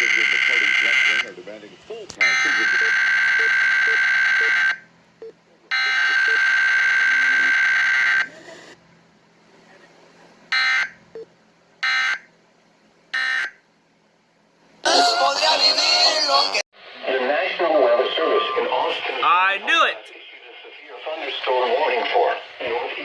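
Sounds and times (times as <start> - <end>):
screechy digital data bursts: 0.0 - 1.3.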